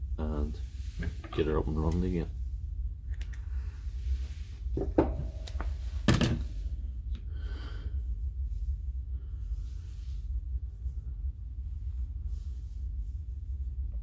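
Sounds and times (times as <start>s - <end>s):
steady low hum: 0.0s - 14.0s
tools knocking on workbench: 4.8s - 6.4s.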